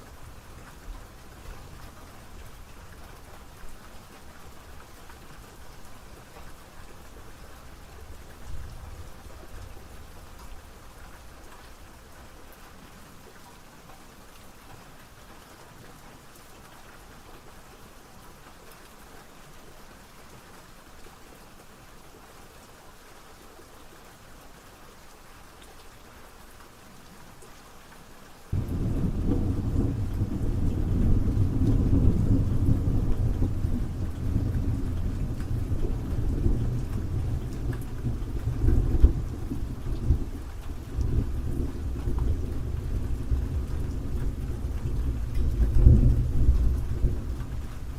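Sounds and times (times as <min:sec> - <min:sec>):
steady rain hiss: 0:00.0 - 0:47.9
deep rumble of thunder: 0:28.5 - 0:47.9.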